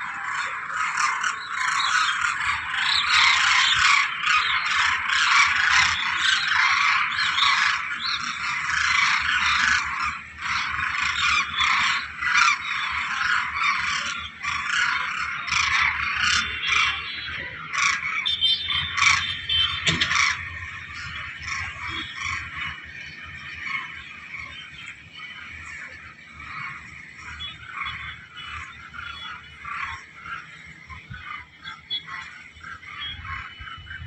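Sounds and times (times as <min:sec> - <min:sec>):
dense chorus of animal calls: 0:00.0 - 0:34.0.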